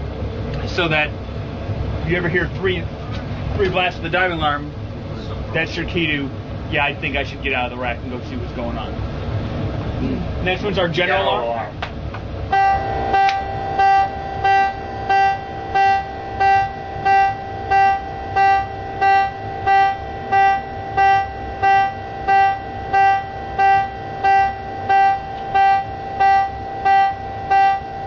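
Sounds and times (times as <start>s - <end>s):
pulsing alarm tone: 12.5s - 28.0s.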